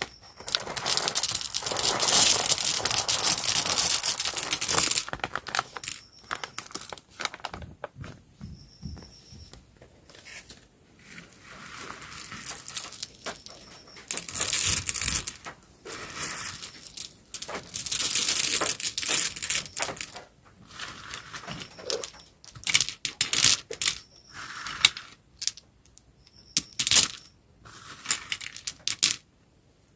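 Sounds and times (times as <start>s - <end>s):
candy packaging crinkling and tearing: 0.4s - 7.7s, 16.3s - 20.1s.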